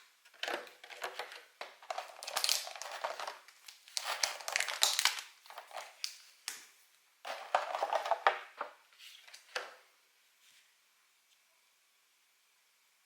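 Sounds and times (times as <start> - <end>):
packaging crinkling: 0.3 - 6.7, 7.3 - 8.5.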